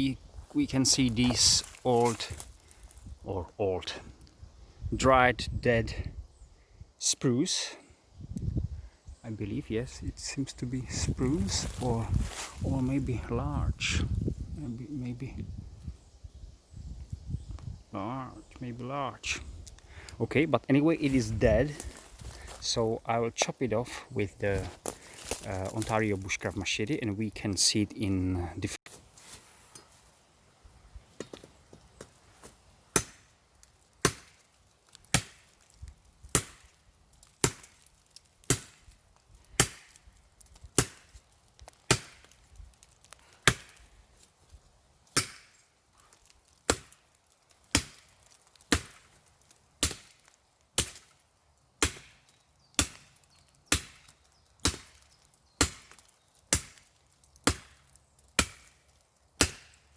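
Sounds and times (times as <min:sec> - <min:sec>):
machete chopping wood: 0:32.9 - 0:33.3, 0:34.0 - 0:34.4, 0:35.1 - 0:35.4, 0:36.3 - 0:36.7, 0:37.4 - 0:37.8, 0:38.4 - 0:38.8, 0:39.6 - 0:39.9, 0:40.8 - 0:41.1, 0:41.9 - 0:42.3, 0:43.4 - 0:43.8, 0:45.1 - 0:45.5, 0:46.7 - 0:47.0, 0:47.7 - 0:48.1, 0:48.7 - 0:49.0, 0:49.8 - 0:50.2, 0:50.8 - 0:51.1, 0:51.8 - 0:52.2, 0:52.8 - 0:53.1, 0:53.7 - 0:55.0, 0:55.6 - 0:56.8, 0:57.4 - 0:57.8, 0:58.4 - 0:58.8, 0:59.4 - 0:59.8.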